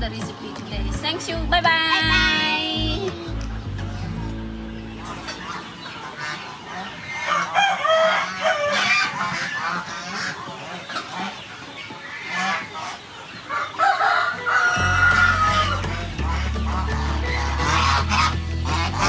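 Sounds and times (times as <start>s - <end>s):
chickens clucking: 1.7s - 19.0s
rooster crowing: 7.2s - 9.1s, 13.5s - 16.4s
low hum: 14.8s - 19.0s.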